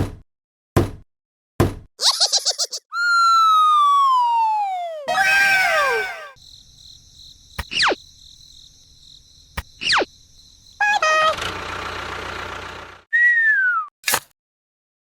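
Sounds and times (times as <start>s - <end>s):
cartoon whistle sound effects: 2.9s - 6.4s, 13.1s - 13.9s.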